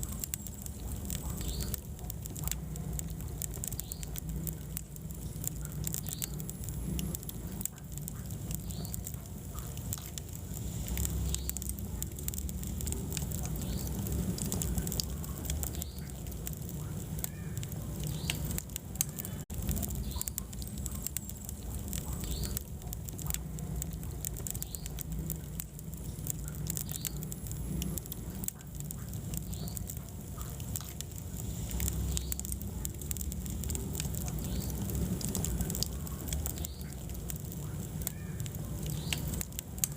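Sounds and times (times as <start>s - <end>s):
fire crackling and popping: 0.0s - 39.9s
fire rumbling in fireplace: 0.0s - 39.9s.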